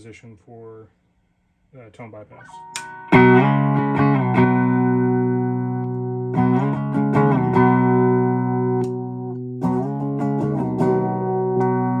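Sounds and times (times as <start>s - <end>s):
electric guitar chords strummed: 2.4s - 12.0s.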